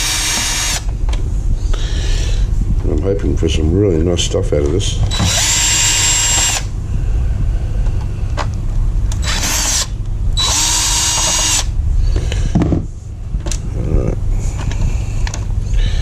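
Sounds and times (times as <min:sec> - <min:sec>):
power drill whining: 0:00.0 - 0:00.9, 0:05.1 - 0:06.7, 0:09.2 - 0:11.7
steady low rumble: 0:00.0 - 0:16.0.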